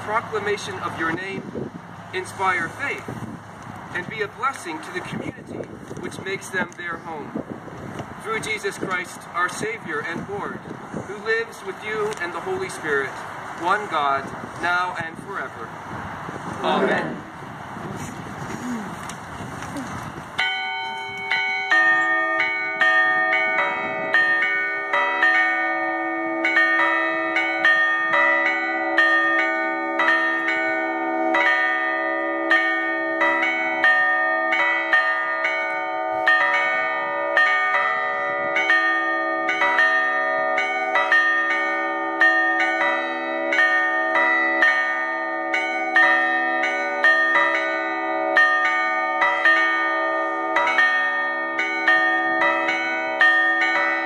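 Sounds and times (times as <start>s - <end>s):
church bells ringing: 8.2s - 15.7s, 20.4s - 54.0s.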